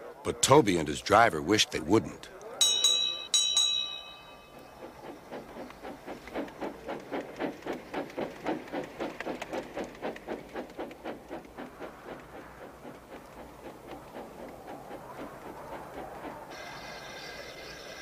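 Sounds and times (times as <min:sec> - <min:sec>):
steam engine chuffing: 0:04.0 - 0:17.5.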